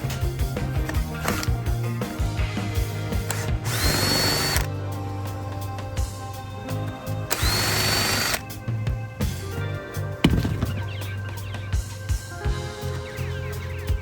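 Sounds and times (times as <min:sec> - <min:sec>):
background music: 0:00.0 - 0:14.0
cordless drill motor whine: 0:03.3 - 0:04.7, 0:07.3 - 0:08.5.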